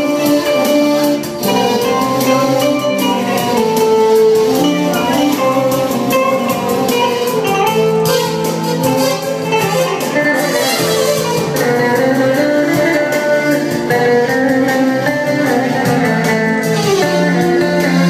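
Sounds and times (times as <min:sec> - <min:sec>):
held melody: 0:00.0 - 0:18.0
steady drum beat: 0:00.0 - 0:18.0.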